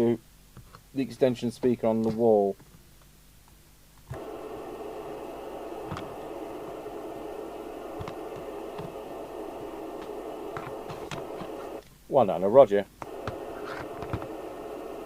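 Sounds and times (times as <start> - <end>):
radio static hiss: 4.1 - 15.0.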